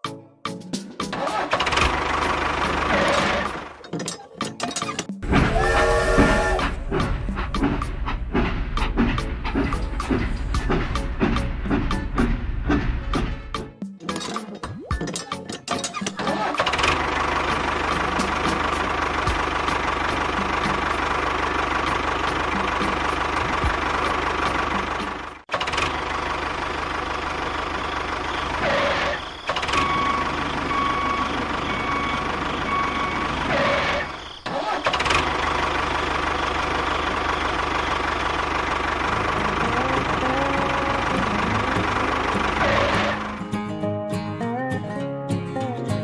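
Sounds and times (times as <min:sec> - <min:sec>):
motor running: 0:05.2 - 0:12.0.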